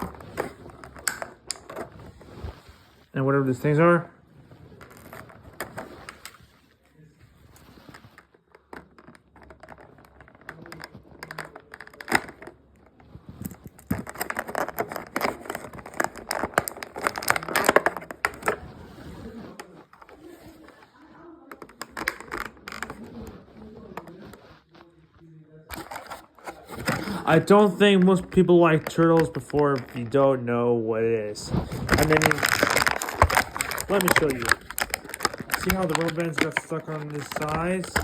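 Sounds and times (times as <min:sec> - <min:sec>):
plastic packaging crinkling: 0:09.5 - 0:20.8, 0:25.7 - 0:30.2, 0:31.4 - 0:38.0.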